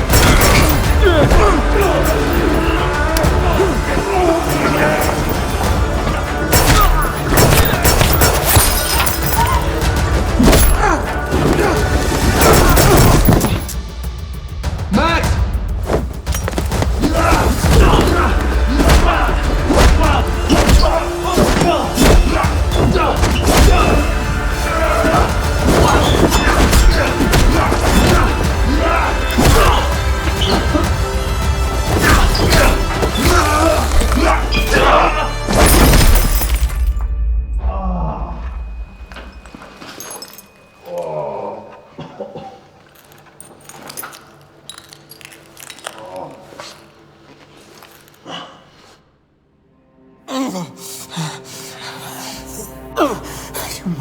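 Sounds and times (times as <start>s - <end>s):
heavy thuds and whacks of blows: 0.0s - 2.6s, 6.4s - 9.5s, 15.9s - 24.4s, 25.0s - 30.9s, 31.8s - 34.9s
action film music: 0.0s - 42.0s, 49.4s - 54.0s.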